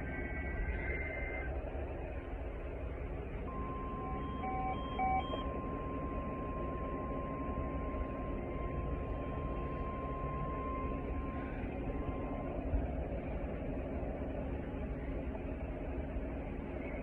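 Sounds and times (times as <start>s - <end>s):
background hiss and hum: 0.0s - 17.0s
short beeps: 3.5s - 12.6s
two-tone data burst: 3.5s - 12.7s
steady warning alarm tone: 3.5s - 16.2s.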